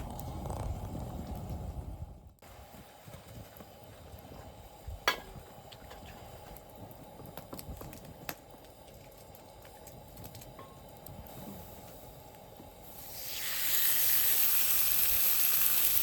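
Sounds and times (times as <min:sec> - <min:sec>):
campfire hissing: 0:00.0 - 0:16.0
campfire pops and cracks: 0:05.0 - 0:11.3.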